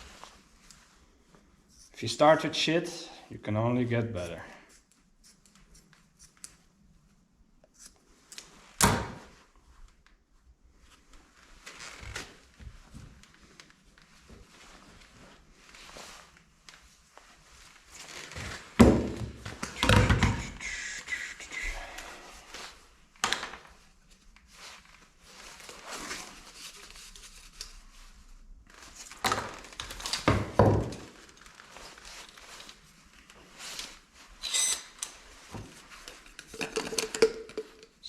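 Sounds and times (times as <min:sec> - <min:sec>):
short squeak: 0:34.4 - 0:34.9.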